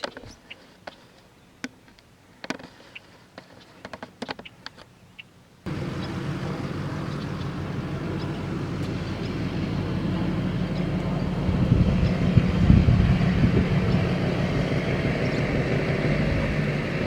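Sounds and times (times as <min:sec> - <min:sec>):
loud engine rumble: 0:05.7 - 0:17.0.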